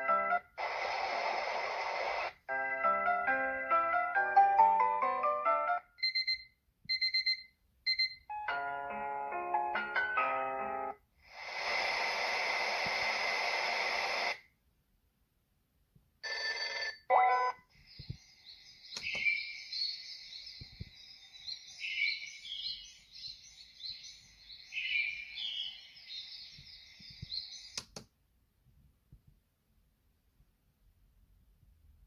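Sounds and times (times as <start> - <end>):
high chirping birdsong: 17.7 - 28.0.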